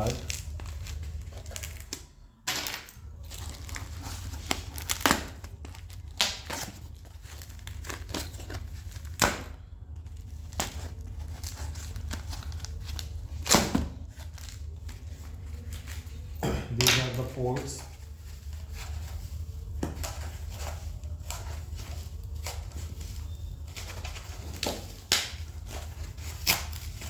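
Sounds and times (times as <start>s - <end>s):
packaging crinkling and tearing: 0.0s - 17.4s, 18.0s - 27.0s
steady low hum: 0.0s - 27.0s.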